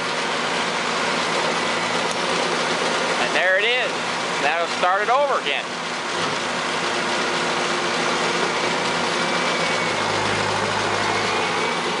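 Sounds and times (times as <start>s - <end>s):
round baler running: 0.0s - 12.0s
tractor engine: 0.0s - 12.0s
deep hum: 6.0s - 12.0s.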